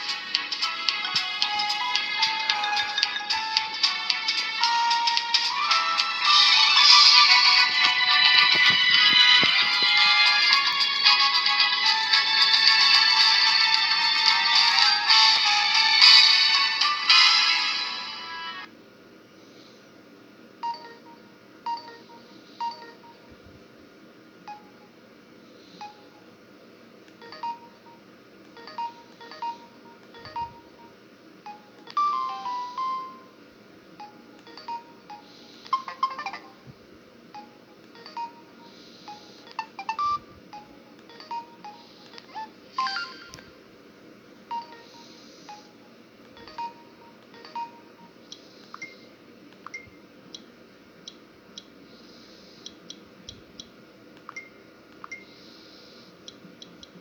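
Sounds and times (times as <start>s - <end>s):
electronic phone ringtone: 0.0s - 18.5s, 20.6s - 23.3s, 27.2s - 33.4s, 34.0s - 36.7s, 37.4s - 43.5s, 44.5s - 48.2s.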